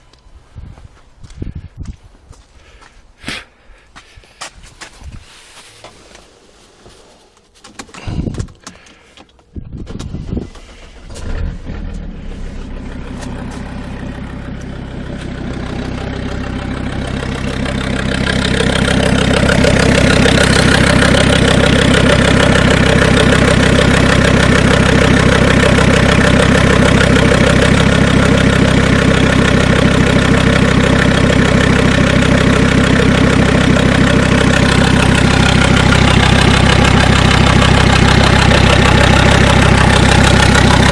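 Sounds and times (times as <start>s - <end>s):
diesel engine starting and idling: 9.6s - 40.9s
engine knock: 11.1s - 40.9s.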